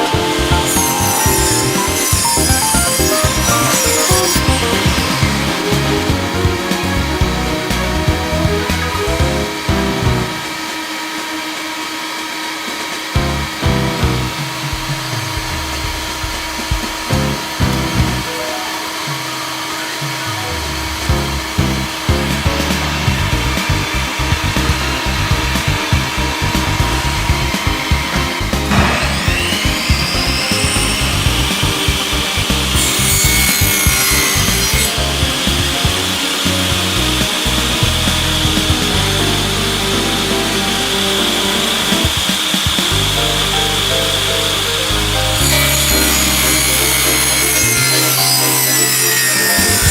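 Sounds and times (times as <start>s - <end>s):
power tool motor whining: 0.0s - 7.0s, 28.7s - 49.9s
instrumental background music: 0.0s - 10.7s, 13.2s - 49.9s.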